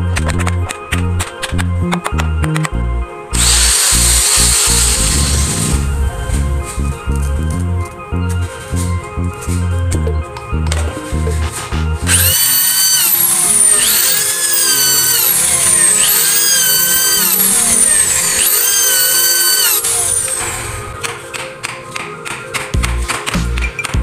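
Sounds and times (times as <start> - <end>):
power drill bursts: 3.4 - 5.9, 12.1 - 20.9.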